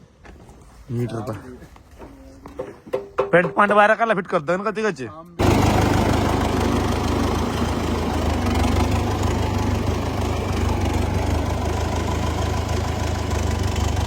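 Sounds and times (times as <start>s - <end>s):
tractor diesel engine running: 5.4s - 14.0s.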